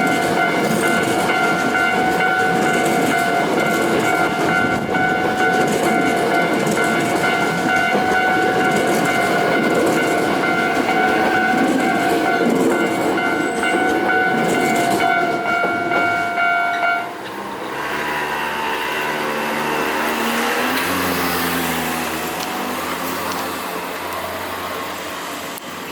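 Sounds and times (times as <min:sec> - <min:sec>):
level crossing alarm ringing: 0:00.0 - 0:17.3
passing train: 0:00.0 - 0:25.9.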